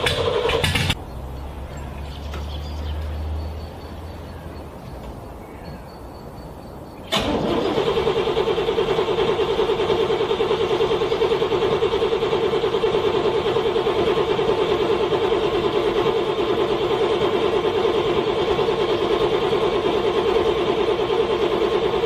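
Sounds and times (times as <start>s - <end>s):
starter motor cranking engine: 0.0s - 1.0s, 7.1s - 22.0s.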